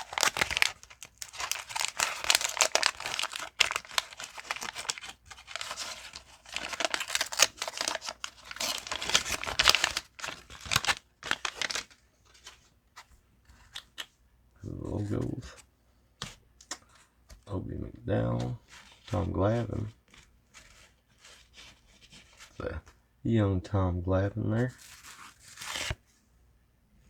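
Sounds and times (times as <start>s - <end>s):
paper wrappers crinkling and tearing: 0.0s - 12.6s, 24.7s - 26.0s.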